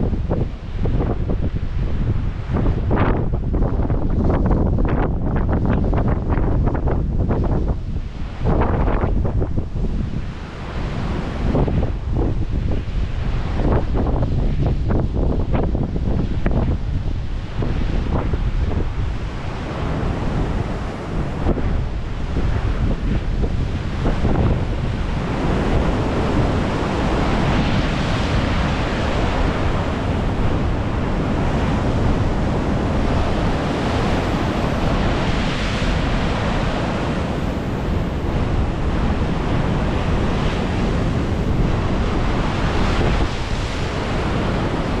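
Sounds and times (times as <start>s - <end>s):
wind rumbling on microphone: 0.0s - 45.0s
ocean surf breaking: 9.8s - 14.9s, 16.0s - 45.0s.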